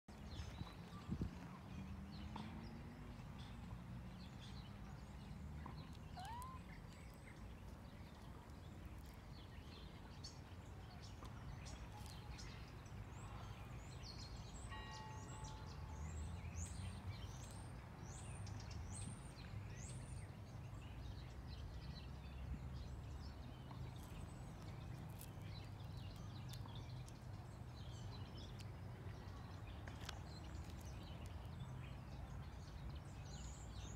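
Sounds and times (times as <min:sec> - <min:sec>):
birds chirping: 0:01.8 - 0:13.4.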